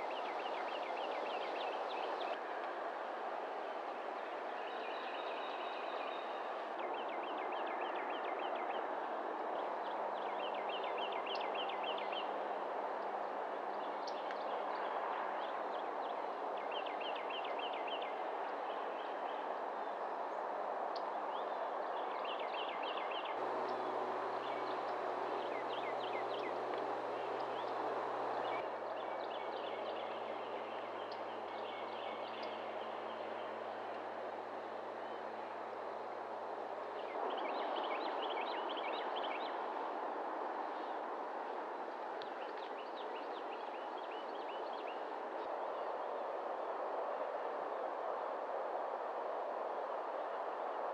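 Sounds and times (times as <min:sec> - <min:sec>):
songbirds chirping: 0:22.4 - 0:28.6
steady background rush: 0:23.4 - 0:28.6.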